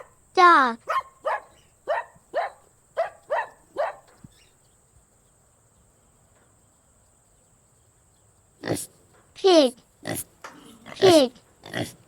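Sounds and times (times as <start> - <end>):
dog barking: 0.8 - 4.1.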